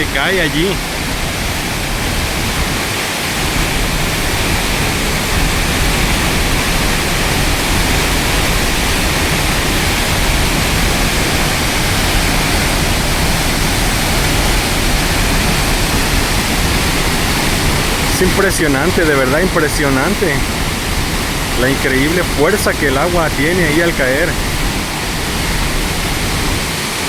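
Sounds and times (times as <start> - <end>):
waterfall rushing: 0.0 - 27.0.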